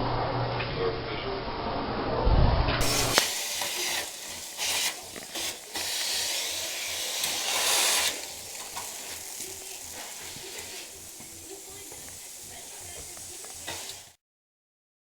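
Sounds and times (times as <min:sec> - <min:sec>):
vacuum cleaner air rushing: 0:02.8 - 0:14.2.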